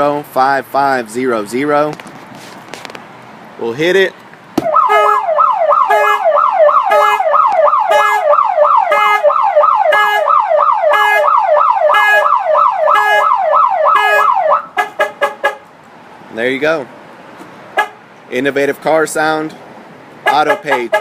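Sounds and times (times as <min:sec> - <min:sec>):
car alarm siren: 0:04.6 - 0:15.4.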